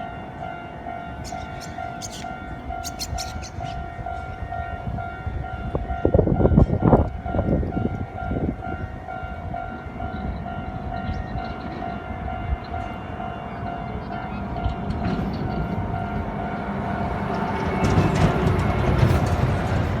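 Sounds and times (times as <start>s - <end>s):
level crossing warning bell: 0.0s - 20.0s
heavy truck passing: 14.8s - 20.0s
truck wheels rumbling and knocking: 17.0s - 20.0s.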